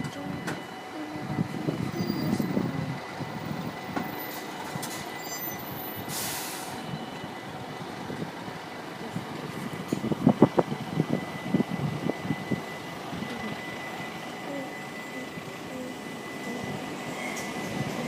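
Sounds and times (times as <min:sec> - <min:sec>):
heavy vehicles rumbling: 0:00.0 - 0:18.0
air brake hiss: 0:06.0 - 0:06.8.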